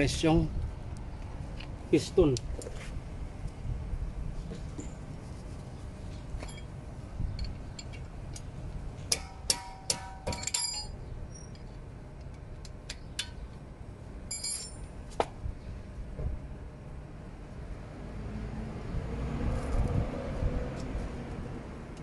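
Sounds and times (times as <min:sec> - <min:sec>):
metal tools clinking: 0:06.4 - 0:06.7, 0:09.1 - 0:11.6, 0:14.3 - 0:14.9.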